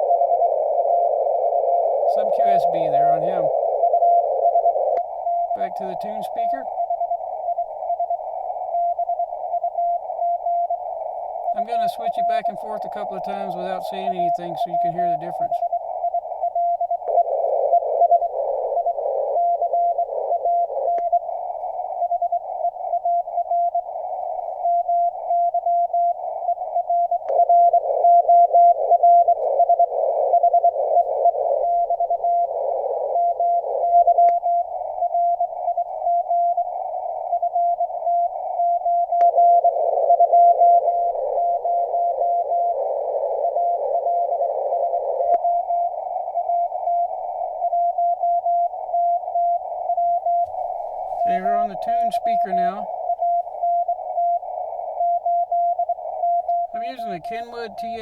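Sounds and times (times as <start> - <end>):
radio static: 0.0 - 6.8, 11.5 - 15.9, 50.2 - 53.7, 56.2 - 58.0
morse code tone: 5.5 - 6.7, 11.5 - 15.6, 50.1 - 54.5, 55.5 - 58.0.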